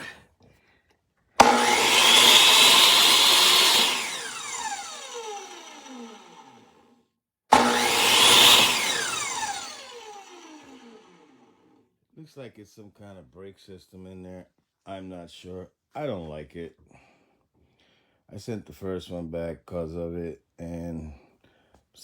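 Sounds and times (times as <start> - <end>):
table saw motor whining: 1.4 - 6.9, 7.5 - 11.7.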